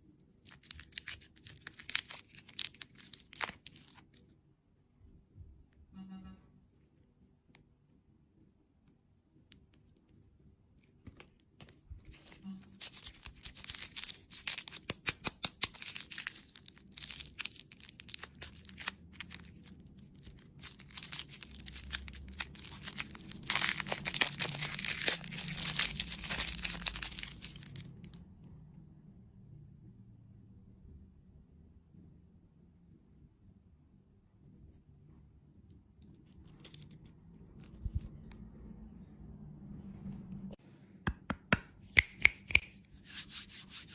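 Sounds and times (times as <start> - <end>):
packaging crackling and rustling: 0.4 - 4.2, 11.6 - 28.2.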